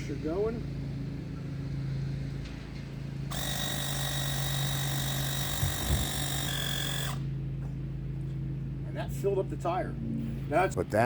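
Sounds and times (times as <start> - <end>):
tire inflator motor whine: 0.0 - 8.6
low hum: 0.0 - 11.0.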